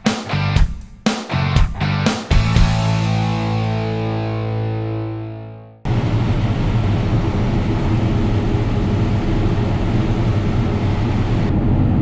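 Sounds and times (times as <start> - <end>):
distorted electric guitar chord: 1.3 - 6.4
combine harvester engine drone: 5.9 - 12.0.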